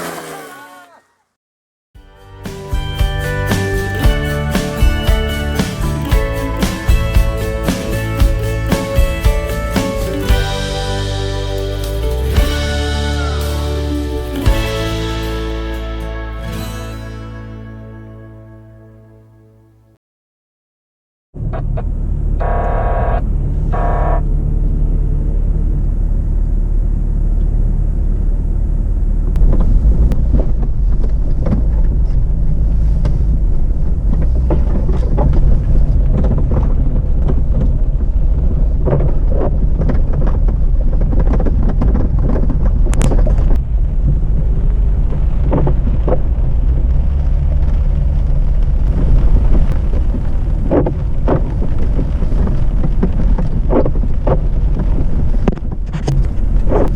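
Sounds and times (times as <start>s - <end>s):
engine and drivetrain rumble: 2.4s - 16.7s, 21.4s - 56.9s
vehicle knocks and jolts: 29.4s - 56.9s.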